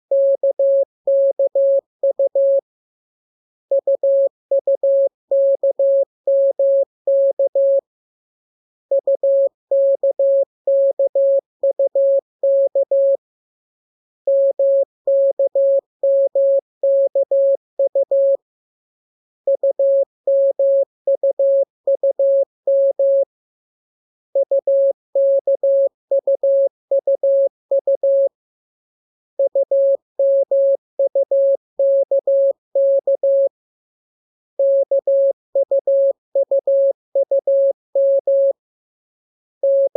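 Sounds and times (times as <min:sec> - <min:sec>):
morse code tone: 0:00.1 - 0:02.6, 0:24.4 - 0:28.3, 0:29.4 - 0:33.5, 0:34.6 - 0:38.6, 0:39.6 - 0:39.9.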